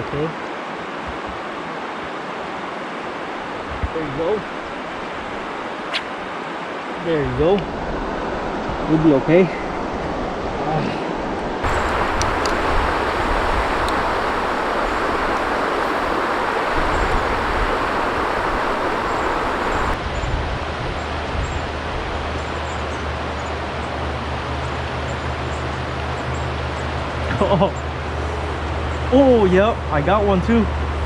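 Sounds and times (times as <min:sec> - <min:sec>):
rushing river: 0:11.6 - 0:20.0.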